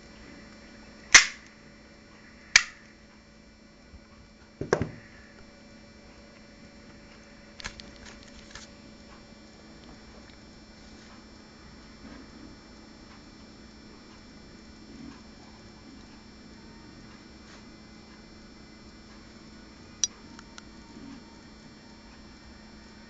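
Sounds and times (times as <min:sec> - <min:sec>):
pistol metallic clicks: 0:01.2 - 0:01.5.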